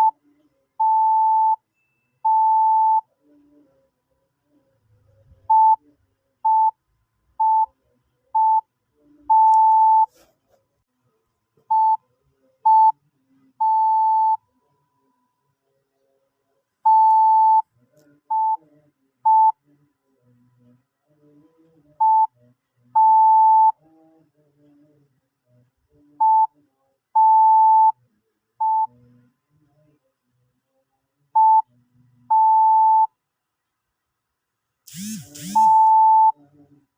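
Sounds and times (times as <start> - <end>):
morse code beeps: 35.0 - 36.4.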